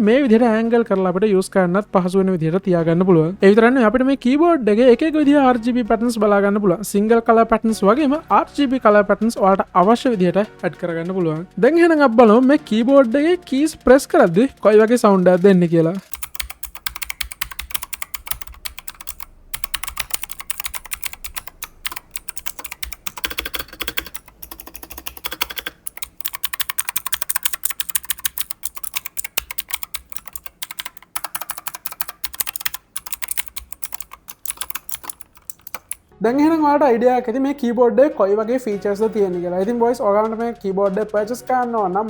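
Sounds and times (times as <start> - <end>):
fast typing on mechanical keyboard: 14.2 - 36.1.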